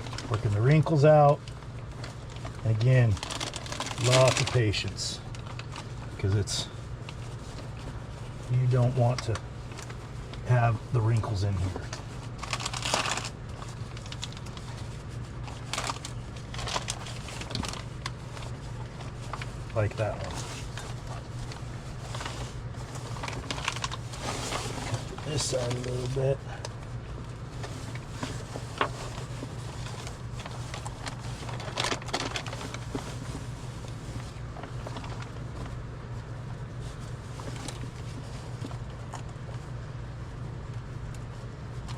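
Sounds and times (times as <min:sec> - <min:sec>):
plastic sheet crinkling: 0:00.0 - 0:39.6
low steady hum: 0:00.0 - 0:41.9.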